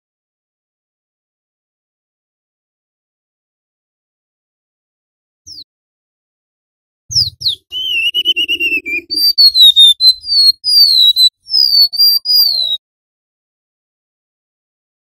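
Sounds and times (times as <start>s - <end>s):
bird singing fluty whistles: 7.1s - 12.8s.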